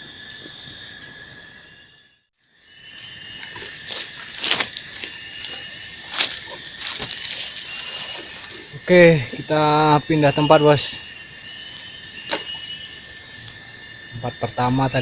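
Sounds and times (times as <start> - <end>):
insects buzzing: 0.0 - 15.0.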